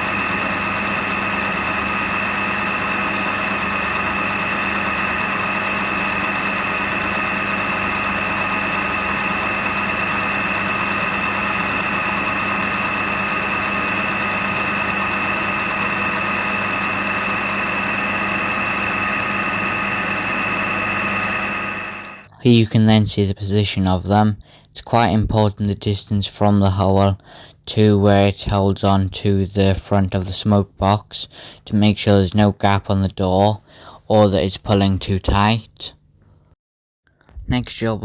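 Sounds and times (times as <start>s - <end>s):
milling machine cutting metal: 0.0s - 22.3s.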